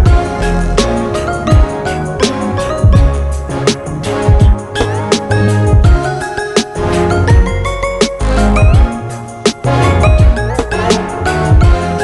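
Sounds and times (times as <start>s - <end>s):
pitched synth notes: 0.0s - 12.0s
deep drum thumps: 2.8s - 3.2s, 4.3s - 4.6s.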